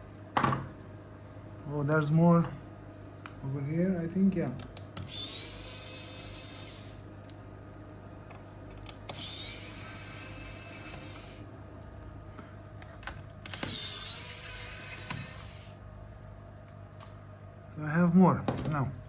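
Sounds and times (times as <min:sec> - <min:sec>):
electric screwdriver whirring: 0:05.0 - 0:07.0, 0:09.1 - 0:11.4, 0:13.5 - 0:15.8.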